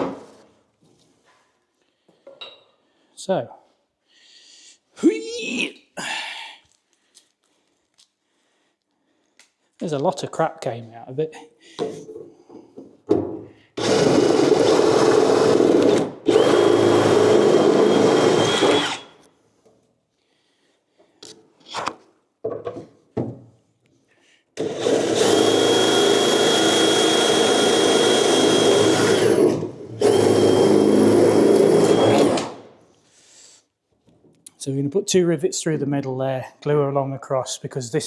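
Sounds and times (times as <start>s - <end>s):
power drill whining: 13.8s - 19.2s, 24.6s - 32.7s.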